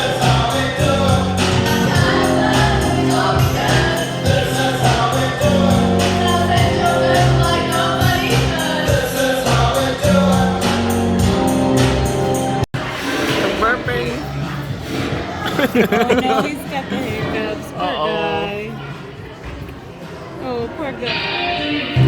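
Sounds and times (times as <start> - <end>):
choir singing over a beat: 0.0 - 12.6.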